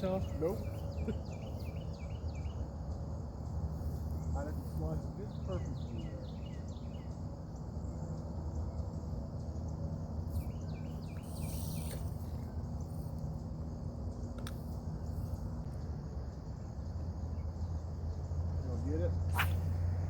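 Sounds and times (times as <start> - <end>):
insects buzzing: 0.0 - 20.0
low steady hum: 0.0 - 20.0
short bird chirps: 10.3 - 13.1.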